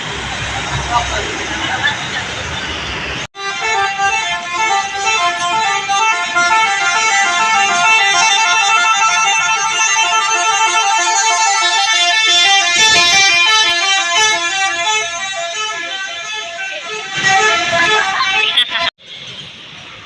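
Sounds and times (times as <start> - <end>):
musical air horn melody: 3.3 - 18.6.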